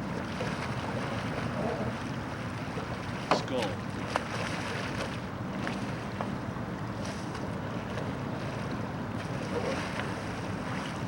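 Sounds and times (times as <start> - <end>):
waves washing: 0.0 - 11.0.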